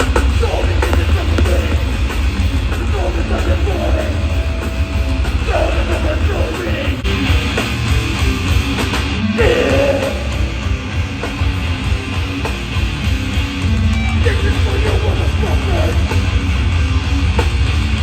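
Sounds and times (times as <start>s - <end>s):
vocals: 0.0s - 7.6s, 9.2s - 11.0s, 14.1s - 16.5s
live heavy rock band: 0.0s - 18.0s.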